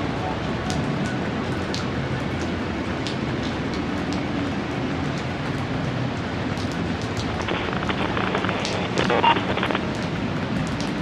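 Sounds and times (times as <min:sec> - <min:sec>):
steady rain: 0:00.0 - 0:11.0
low constant rumble: 0:06.6 - 0:10.0
sharp drop ticks: 0:07.3 - 0:09.9.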